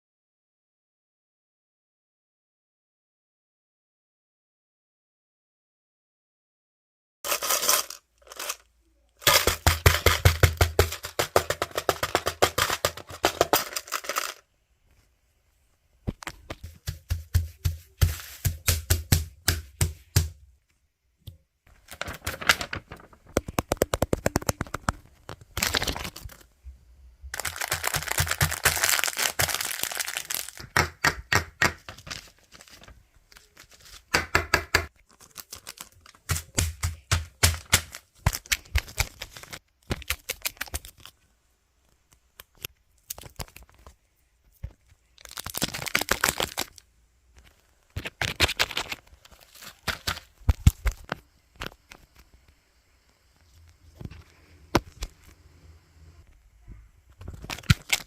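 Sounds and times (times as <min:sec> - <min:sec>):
rapid tapping and clicking: 0:23.4 - 0:25.0.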